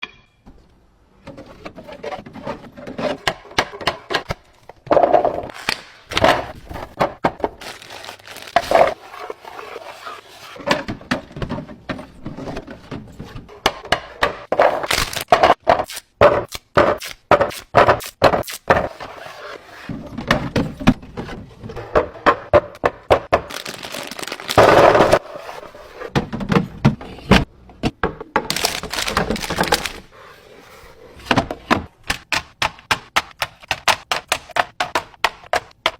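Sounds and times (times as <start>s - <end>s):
groceries clicking and clattering: 2.2s - 9.0s, 21.9s - 25.2s, 26.2s - 30.1s.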